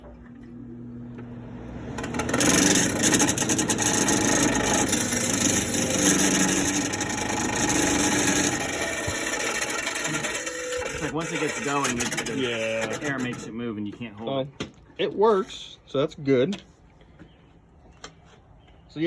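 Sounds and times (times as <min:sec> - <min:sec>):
air conditioner rattling: 0:01.8 - 0:13.8.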